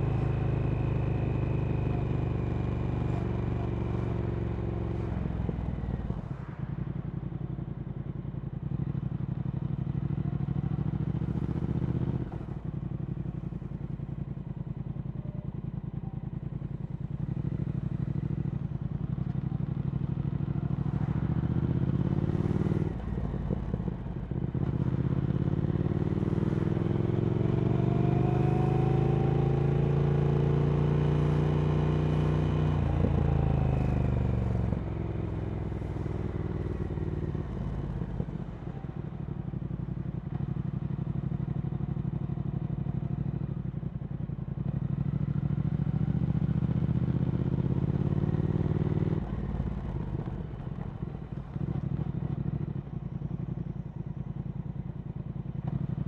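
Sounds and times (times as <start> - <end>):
motorcycle engine revving: 16.4 - 53.5.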